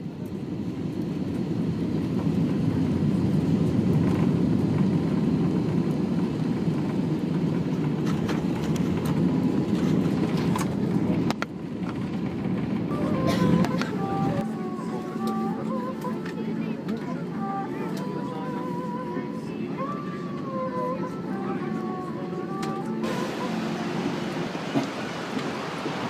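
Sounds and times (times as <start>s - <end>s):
vehicle rumble in motion: 22.8s - 26.0s.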